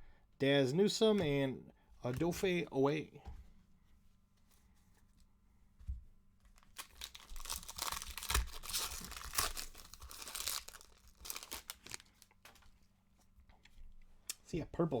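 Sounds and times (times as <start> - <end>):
plastic wrapper tearing and crinkling: 6.5 - 12.6.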